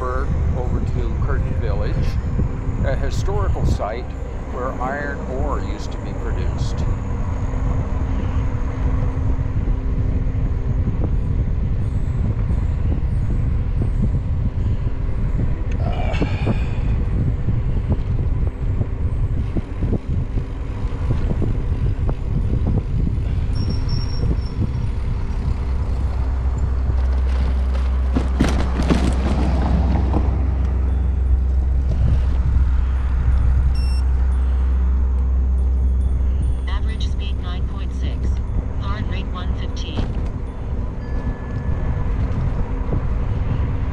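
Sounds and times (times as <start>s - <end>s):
wind noise on microphone: 0.0s - 43.9s.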